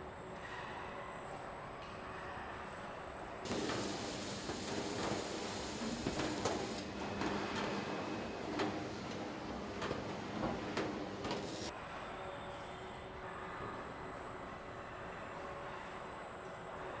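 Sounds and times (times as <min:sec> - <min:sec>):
machinery hum and hiss: 0:03.5 - 0:11.7.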